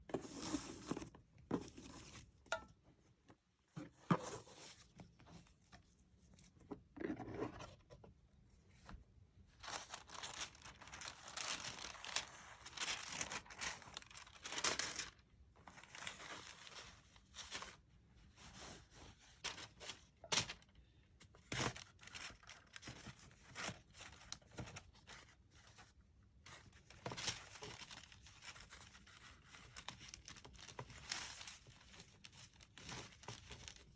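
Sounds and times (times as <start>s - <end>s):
packaging rustling and tearing: 9.6s - 17.8s, 21.5s - 25.3s, 26.5s - 33.9s.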